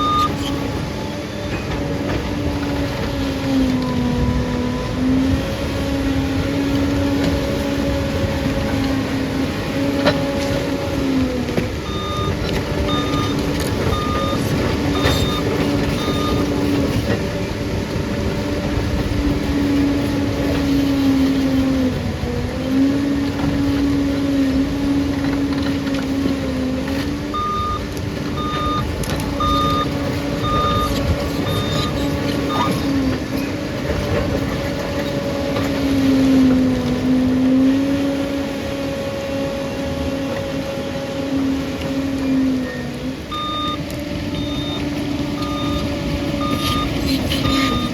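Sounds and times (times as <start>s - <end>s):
reversing alarm beeping: 0.0s - 2.0s, 11.8s - 17.1s, 27.3s - 33.1s, 42.6s - 47.9s
bulldozer diesel engine: 0.0s - 47.9s.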